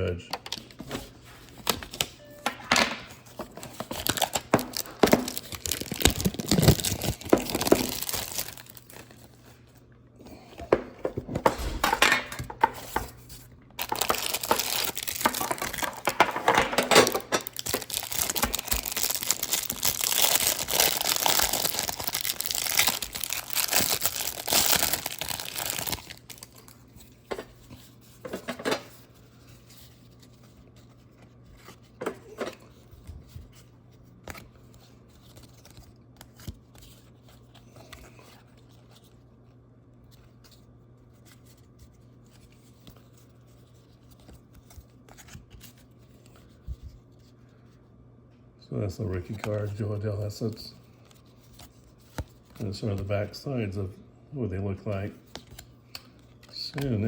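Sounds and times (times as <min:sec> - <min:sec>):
plastic wrapping crinkling and tearing: 0:03.2 - 0:09.5, 0:12.4 - 0:27.2.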